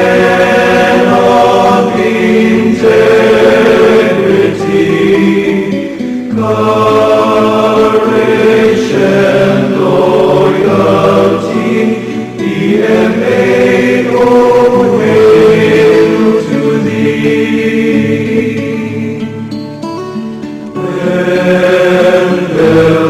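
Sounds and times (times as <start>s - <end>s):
choir singing a hymn: 0.0s - 19.6s, 20.7s - 23.0s.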